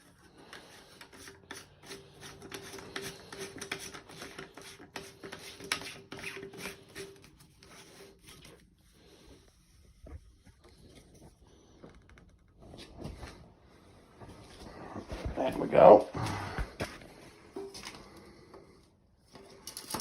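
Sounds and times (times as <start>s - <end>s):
toilet tank parts scraping: 0.0s - 8.8s, 16.5s - 20.0s.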